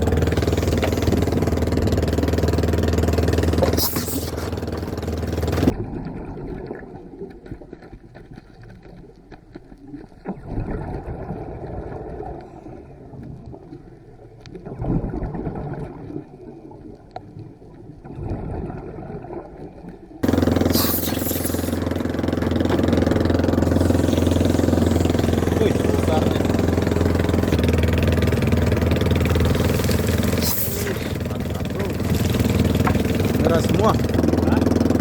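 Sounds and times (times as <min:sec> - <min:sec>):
boat engine running: 0:00.0 - 0:06.0, 0:20.2 - 0:35.0
muffled underwater sound: 0:00.0 - 0:35.0.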